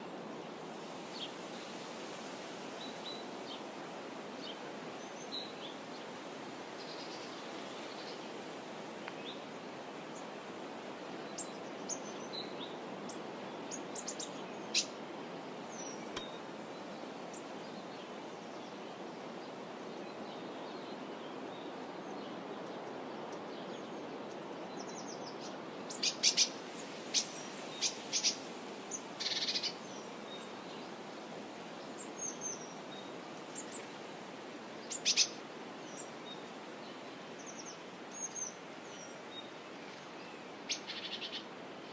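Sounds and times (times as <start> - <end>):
steady background hiss: 0.0 - 41.9
small birds chirping: 11.3 - 15.0, 19.9 - 30.9, 34.8 - 41.9.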